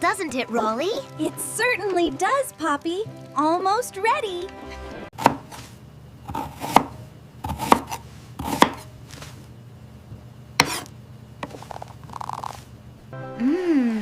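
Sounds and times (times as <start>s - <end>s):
knife chopping on cutting board: 5.2s - 5.7s, 6.3s - 8.9s, 10.6s - 11.6s.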